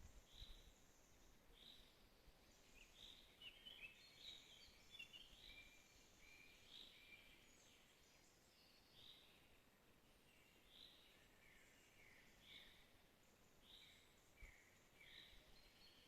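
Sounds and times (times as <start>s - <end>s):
background hiss: 0.0s - 16.0s.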